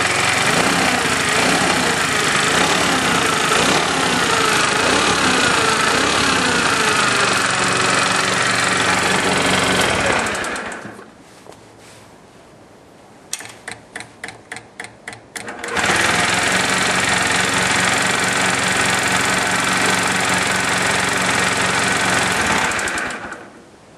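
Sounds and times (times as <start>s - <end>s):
engine running with rattling clatter: 0.0s - 11.0s, 15.4s - 23.5s
scooter engine cranking: 0.0s - 11.0s, 13.3s - 23.5s.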